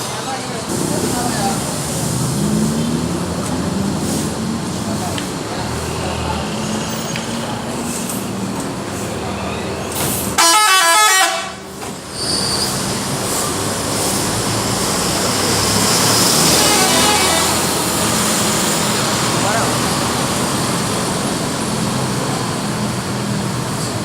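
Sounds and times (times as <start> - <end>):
road traffic noise: 0.0 - 24.0
bus multi-tone horn: 10.4 - 11.7, 16.5 - 17.9.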